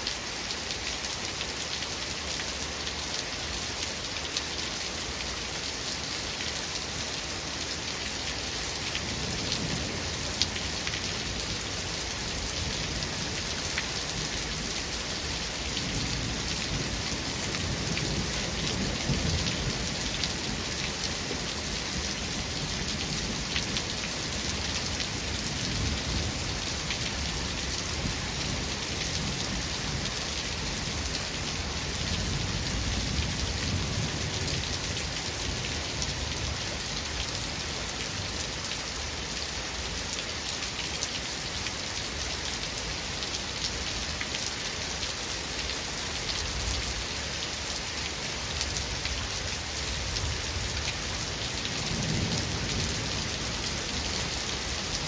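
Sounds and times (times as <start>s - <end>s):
steady rain falling: 0.0s - 55.0s
low rolling thunder: 51.8s - 53.6s.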